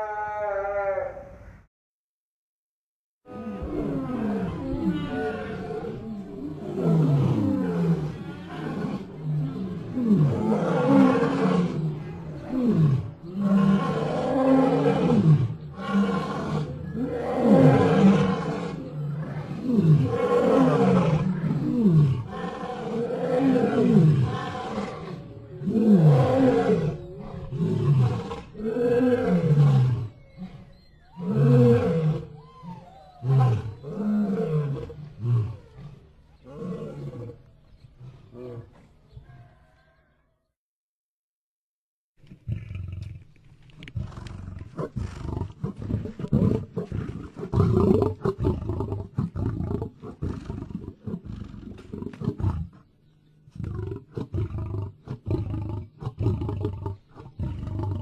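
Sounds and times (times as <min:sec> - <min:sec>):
lion roaring: 0:03.3 - 0:38.9, 0:53.6 - 0:58.0.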